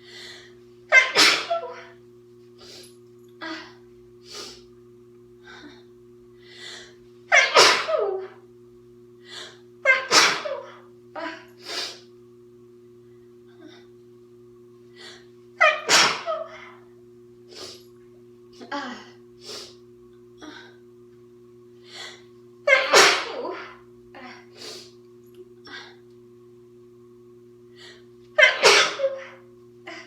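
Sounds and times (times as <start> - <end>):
faint steady hum: 0.0 - 30.0
girl sneezing loudly: 0.9 - 1.8, 7.3 - 8.3, 9.9 - 10.7, 15.6 - 16.6, 22.7 - 23.7, 28.4 - 29.3.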